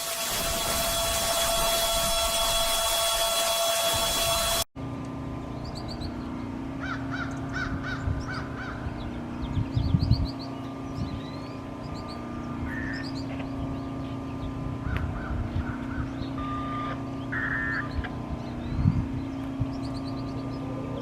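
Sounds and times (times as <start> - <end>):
steady low hum: 0.0 - 21.0
birds calling harshly: 5.2 - 21.0.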